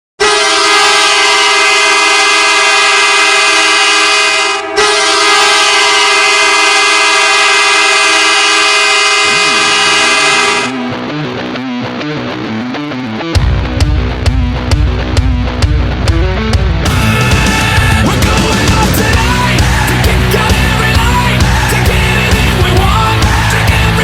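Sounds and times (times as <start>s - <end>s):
hockey goal horn blasts: 0.2s - 10.9s, 16.9s - 18.2s.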